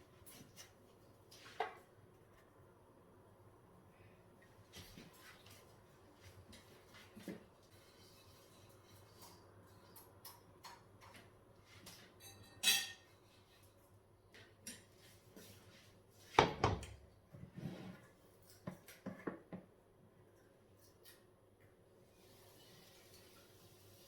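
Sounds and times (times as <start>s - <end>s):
kitchen utensils clattering: 12.2s - 13.1s.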